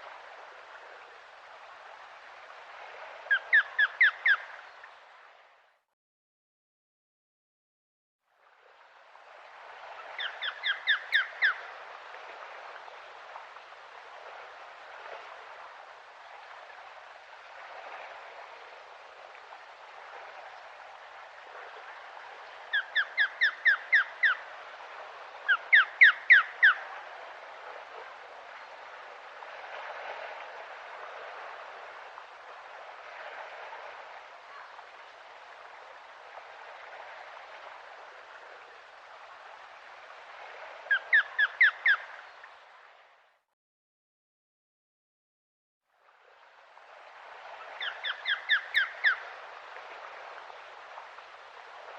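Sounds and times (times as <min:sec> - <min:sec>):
steady outdoor hiss: 0:00.0 - 0:05.7, 0:08.4 - 0:43.4, 0:46.0 - 0:51.9
osprey calling: 0:03.3 - 0:04.9, 0:10.1 - 0:11.7, 0:22.7 - 0:24.5, 0:25.4 - 0:26.9, 0:40.9 - 0:42.4, 0:47.6 - 0:49.4.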